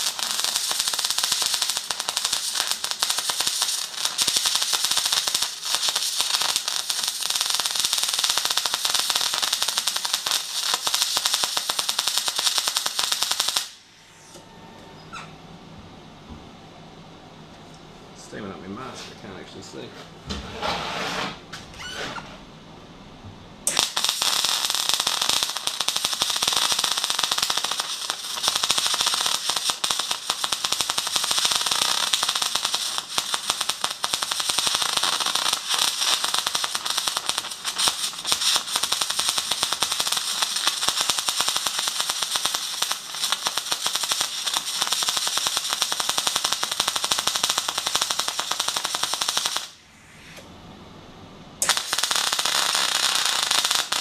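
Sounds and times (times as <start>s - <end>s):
welding arc crackling: 0.0s - 13.8s, 23.7s - 49.8s, 51.6s - 54.0s.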